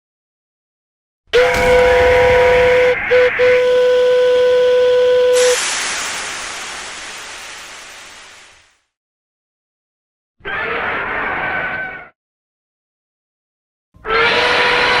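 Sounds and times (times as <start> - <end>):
hiss: 5.3 - 8.8.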